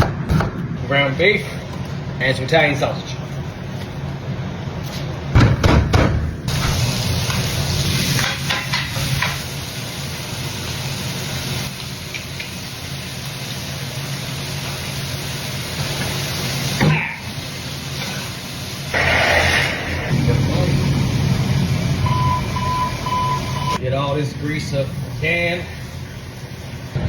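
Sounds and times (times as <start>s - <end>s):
meat sizzling in a pan: 6.5s - 20.1s.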